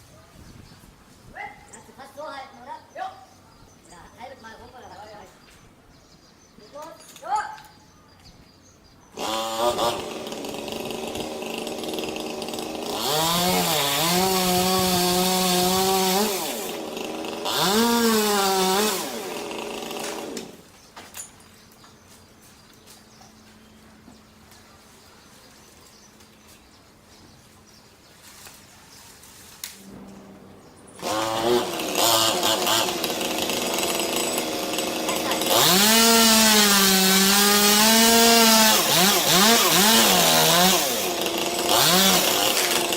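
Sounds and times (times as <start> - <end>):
chainsaw engine revving: 9.2 - 20.6, 29.8 - 42.9.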